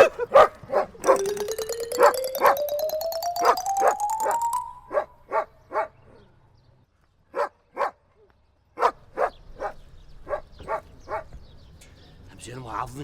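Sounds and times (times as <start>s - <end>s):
dog barking: 0.0s - 0.9s, 7.4s - 8.0s, 8.8s - 11.3s
rising musical tone: 1.0s - 5.1s.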